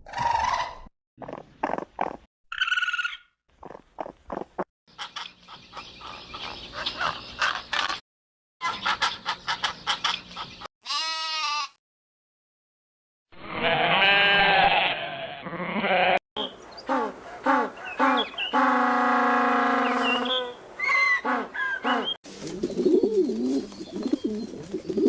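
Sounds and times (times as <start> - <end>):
wavering bleat-like cry: 10.8 - 11.8, 13.4 - 16.2, 16.9 - 22.2
clicking and croaking animal calls: 16.4 - 22.2
dense pulsing animal chorus: 16.4 - 22.2.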